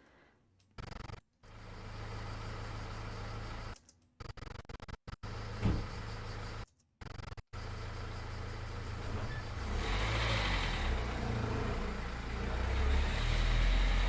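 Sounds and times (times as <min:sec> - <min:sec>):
heavy truck engine rumble: 0:07.6 - 0:14.0.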